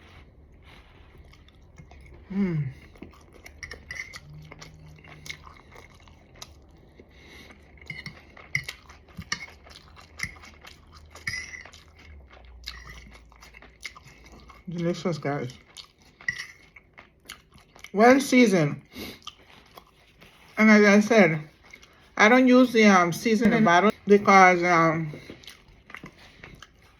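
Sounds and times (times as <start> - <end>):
person chewing: 0.0 - 18.0, 18.8 - 20.6, 21.2 - 26.9
cutlery clinking: 3.6 - 4.2, 11.2 - 11.8, 16.2 - 16.7.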